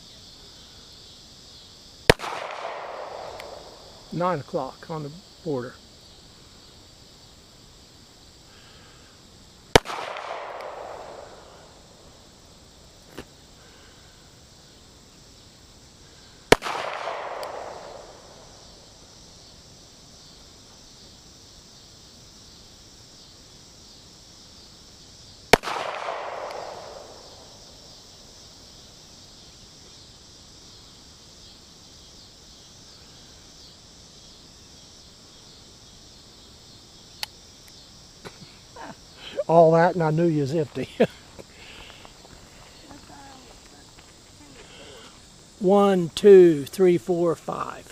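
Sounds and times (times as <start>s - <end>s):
crickets chirring: 0.0s - 47.9s
handgun shots with echo: 2.1s - 3.7s, 9.8s - 11.2s, 16.5s - 18.0s, 25.6s - 27.2s.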